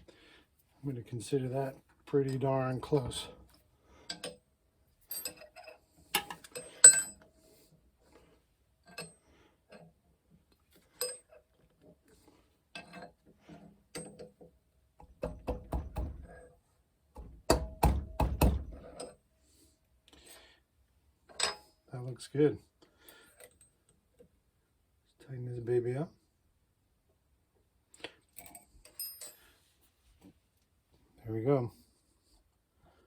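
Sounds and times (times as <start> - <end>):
metal tools clicking and rattling: 5.1 - 7.2, 28.4 - 29.6.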